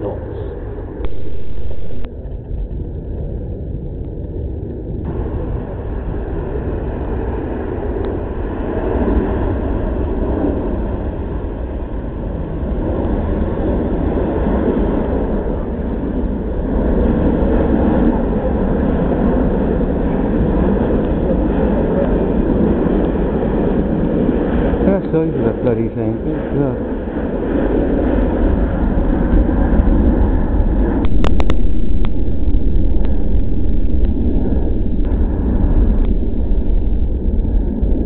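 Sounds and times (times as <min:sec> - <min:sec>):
jet airliner flying past: 0:00.0 - 0:38.0.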